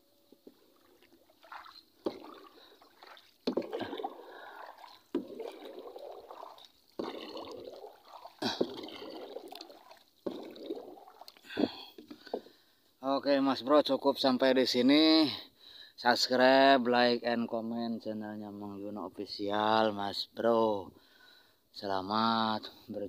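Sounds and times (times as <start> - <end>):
water sloshing and splashing: 0.3 - 12.5.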